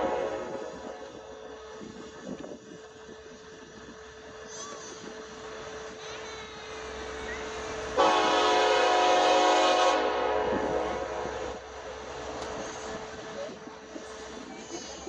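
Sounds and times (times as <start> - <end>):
locomotive air horn chord: 0.0 - 1.2, 8.0 - 11.6.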